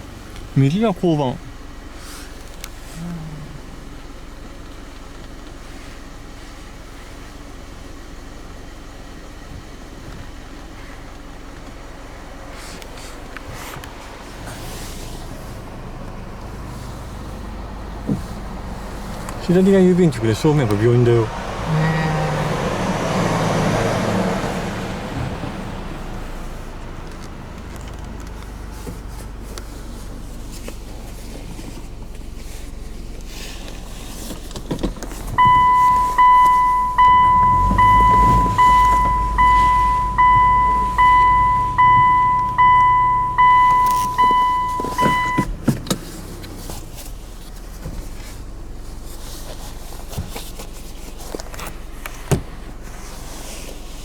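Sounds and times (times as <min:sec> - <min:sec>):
vehicle noise: 0:00.0 - 0:54.0
electronic warning chime: 0:35.4 - 0:45.5.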